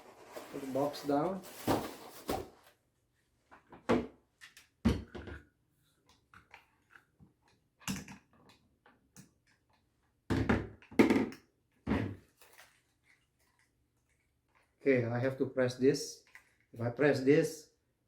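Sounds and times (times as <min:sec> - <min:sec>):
cardboard box set down: 0:00.0 - 0:02.6.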